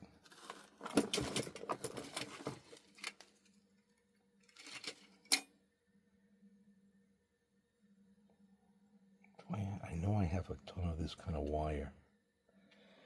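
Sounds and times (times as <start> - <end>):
faint low hum: 0.0 - 13.0
small metal parts clinking: 4.4 - 5.5.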